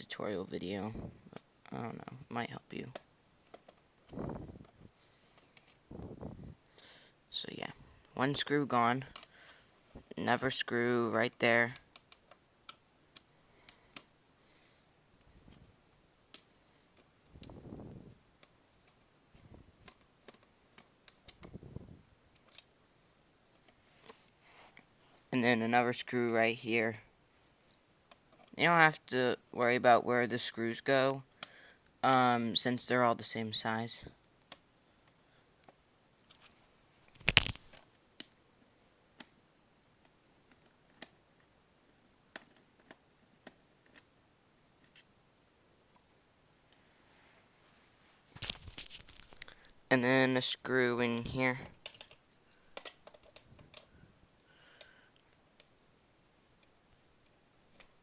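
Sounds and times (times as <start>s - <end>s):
plastic ticks and clicks: 51.8s - 53.9s.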